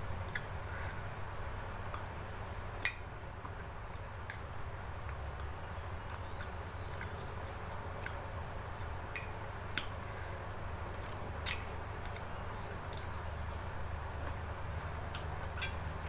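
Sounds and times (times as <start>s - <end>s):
steady low hum: 0.0s - 16.0s
mouth clicks and smacks: 0.3s - 0.5s, 8.8s - 10.0s, 11.0s - 12.3s.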